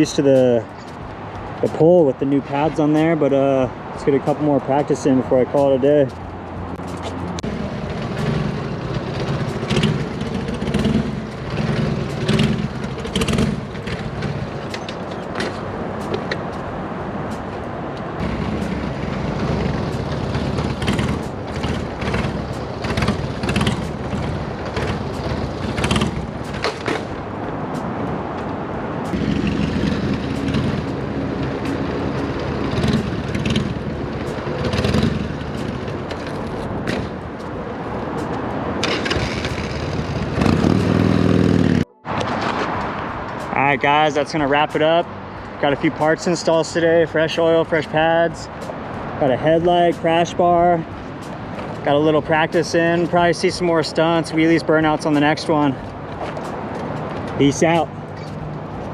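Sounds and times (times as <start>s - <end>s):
motorcycle engine revving: 7.3s - 15.0s, 18.2s - 27.1s, 29.1s - 37.2s, 38.8s - 41.9s.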